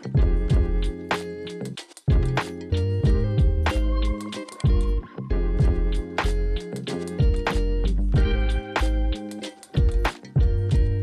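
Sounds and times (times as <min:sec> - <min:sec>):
pop music with drum beat: 0:00.0 - 0:11.0.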